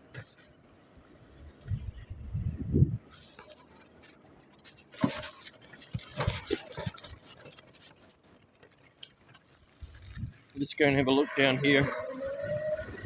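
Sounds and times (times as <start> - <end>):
scratchy rustling and scraping: 3.1 - 10.5.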